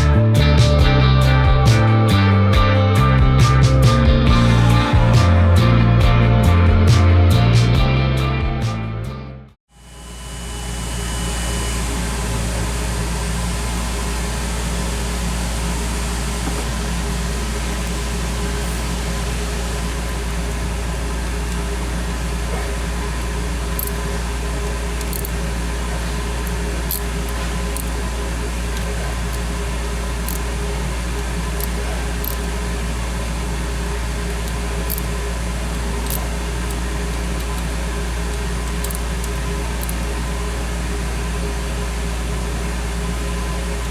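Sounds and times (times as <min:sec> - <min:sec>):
mechanical hum and hiss: 0:09.7 - 0:43.9.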